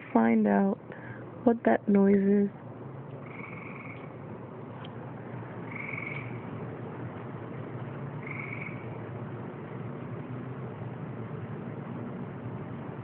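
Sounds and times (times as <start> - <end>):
low background hum: 0.0 - 13.0
high buzzy animal call: 3.2 - 4.2, 5.7 - 6.5, 8.2 - 9.0.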